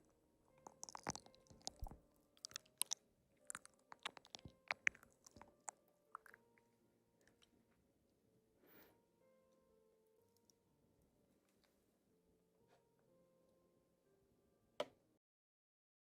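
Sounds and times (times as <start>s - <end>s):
crisp crackly chewing: 0.0s - 6.5s
mouth smacks: 0.6s - 6.4s.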